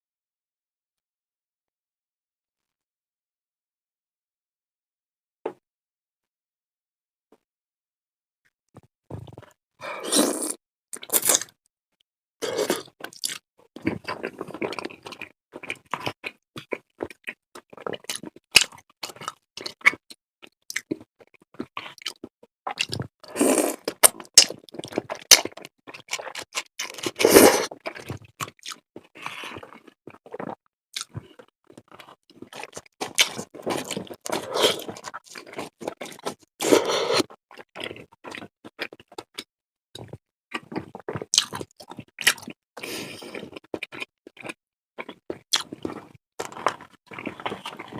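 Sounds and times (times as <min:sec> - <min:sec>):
close chewing and mouth smacks: 0:12.6 - 0:23.1, 0:23.8 - 0:47.9.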